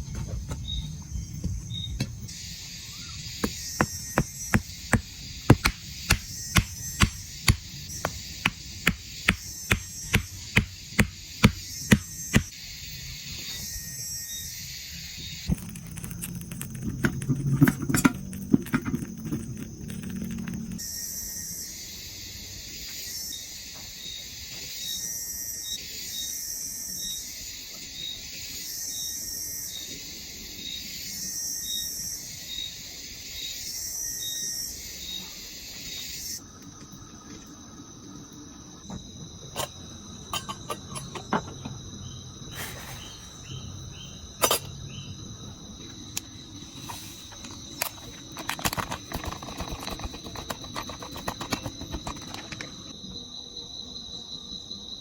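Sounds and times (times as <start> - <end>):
pulsing insect chorus: 0.6 - 15.6, 19.0 - 55.0
high insect trill: 0.6 - 55.0
sharp clicks and knocks: 3.4 - 12.5, 47.8 - 52.8.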